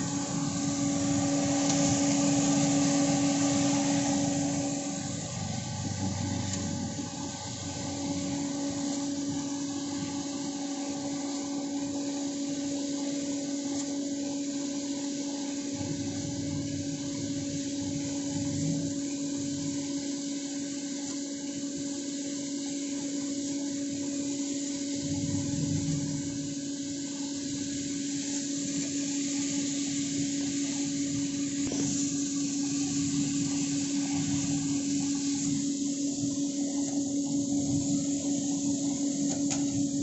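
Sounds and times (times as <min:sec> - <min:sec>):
low rumbling: 0:00.0 - 0:09.4, 0:24.9 - 0:26.7
whooshing airflow: 0:00.0 - 0:10.4, 0:25.0 - 0:26.7
roasting machine motor hum: 0:00.0 - 0:40.0.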